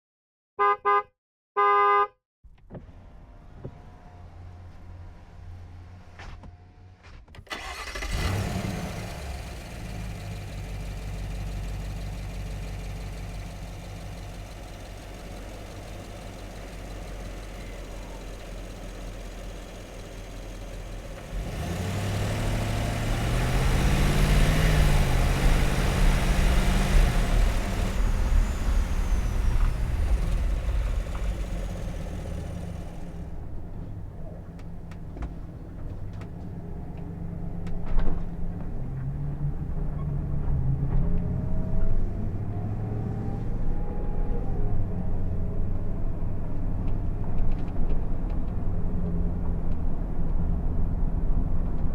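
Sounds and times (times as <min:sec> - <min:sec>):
engine cranking and idling: 0:07.4 - 0:42.4
engine revving: 0:07.5 - 0:33.6, 0:38.6 - 0:46.3.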